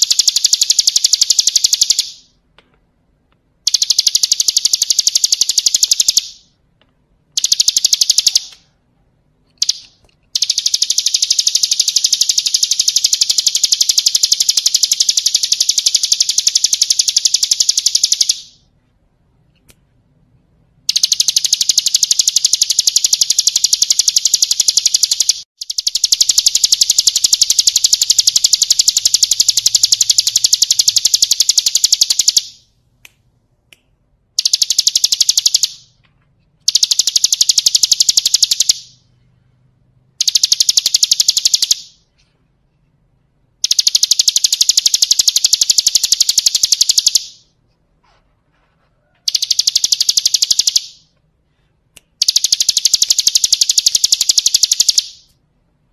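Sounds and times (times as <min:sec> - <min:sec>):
bird singing rattling trill: 0:00.0 - 0:02.4, 0:03.6 - 0:06.6, 0:07.4 - 0:08.6, 0:09.6 - 0:18.7, 0:20.9 - 0:32.7, 0:34.4 - 0:35.9, 0:36.7 - 0:39.0, 0:40.2 - 0:42.1, 0:43.6 - 0:47.4, 0:49.3 - 0:51.1, 0:52.2 - 0:55.3.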